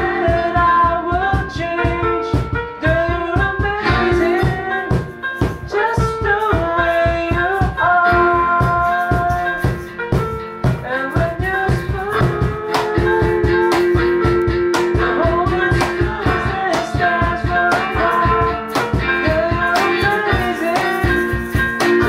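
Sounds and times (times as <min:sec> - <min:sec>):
song with guitar and steady beat: 0:00.0 - 0:22.0.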